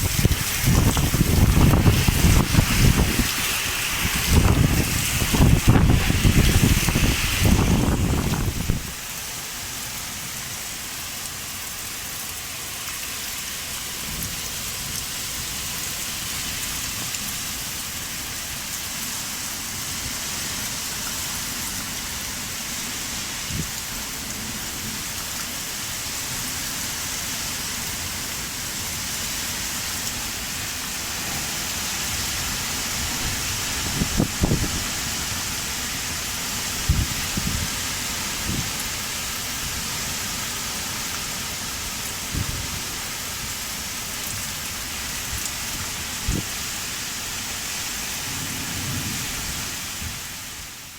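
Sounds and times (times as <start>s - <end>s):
heavy rain pouring: 0.0s - 50.9s.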